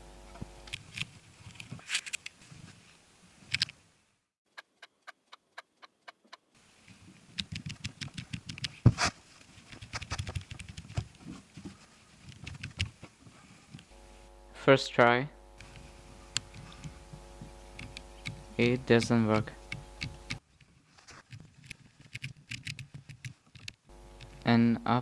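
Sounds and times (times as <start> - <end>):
light evenly spaced ticks: 15.6 - 20.4.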